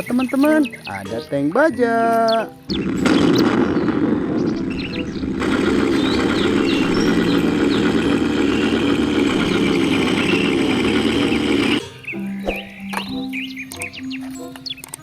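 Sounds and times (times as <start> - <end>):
motor-like rumble: 2.8 - 11.8.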